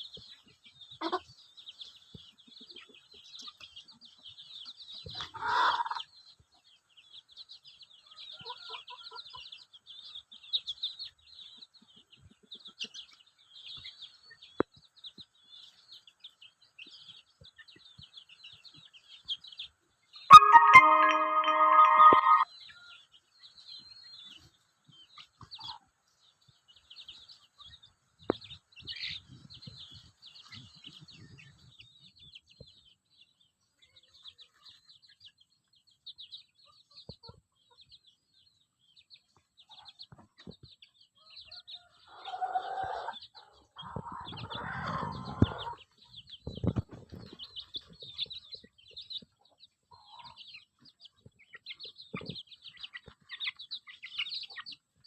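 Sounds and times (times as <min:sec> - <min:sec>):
chicks peeping: 0:00.0 - 0:55.0
chicken call: 0:20.3 - 0:22.4.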